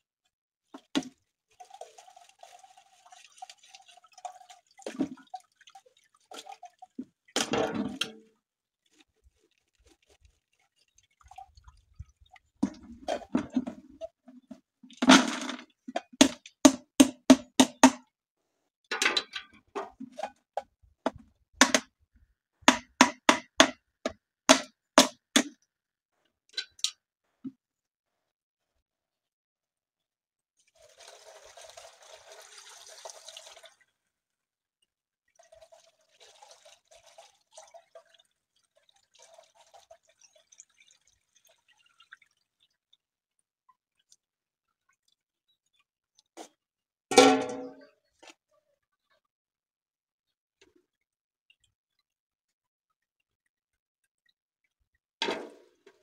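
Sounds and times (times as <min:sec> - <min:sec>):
liquid trickling and dripping: 0:00.7 - 0:15.0, 0:30.6 - 0:46.7, 0:50.3 - 0:56.0
containers and utensils clinking: 0:07.3 - 0:08.2, 0:12.6 - 0:16.6, 0:18.9 - 0:21.8, 0:26.5 - 0:27.0, 0:46.4 - 0:48.4.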